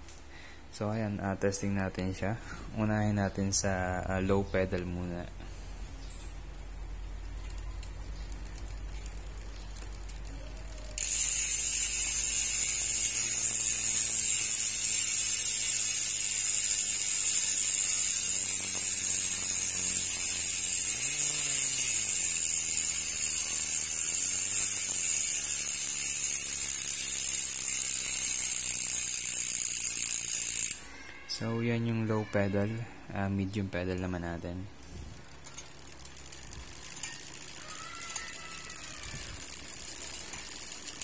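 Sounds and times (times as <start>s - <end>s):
bicycle hub freewheel clicking: 6.0s - 31.0s, 33.9s - 41.0s.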